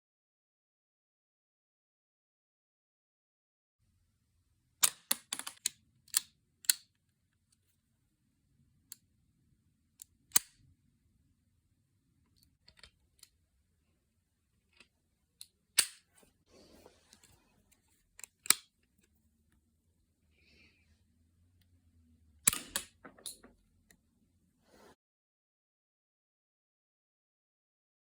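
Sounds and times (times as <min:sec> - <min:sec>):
plastic toy pistol clicks: 0:04.8 - 0:06.9, 0:10.0 - 0:10.6, 0:15.8 - 0:16.0, 0:18.2 - 0:18.7, 0:22.4 - 0:23.0
loud plastic snap: 0:15.8 - 0:16.0.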